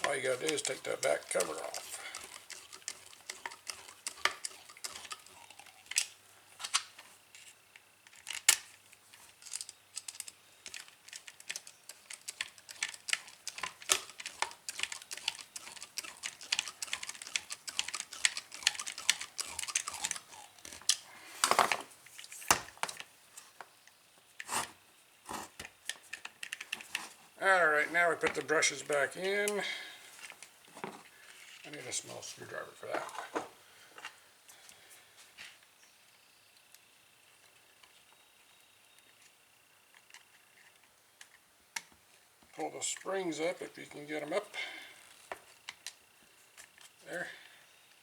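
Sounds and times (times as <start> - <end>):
plastic and metal parts clicking: 0.0 - 21.8, 25.9 - 27.0.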